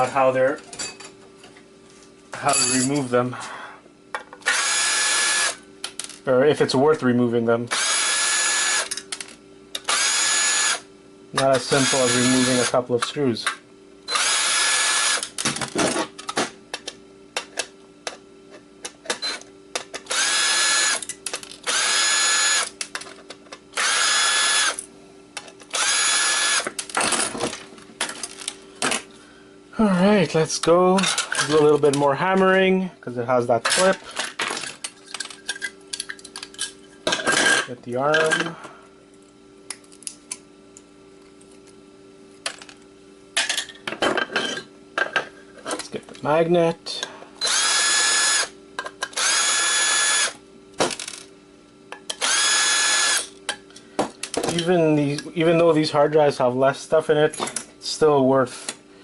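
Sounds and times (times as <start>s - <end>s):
power drill-driver running: 4.4s - 5.6s, 7.7s - 8.9s, 9.8s - 10.8s, 11.6s - 12.8s, 14.1s - 15.3s, 20.1s - 22.7s, 23.8s - 24.8s, 25.7s - 26.8s, 47.4s - 48.5s, 49.2s - 50.4s, 52.2s - 53.3s
clicks and knocks of handled parts: 22.8s - 23.6s, 33.6s - 38.5s.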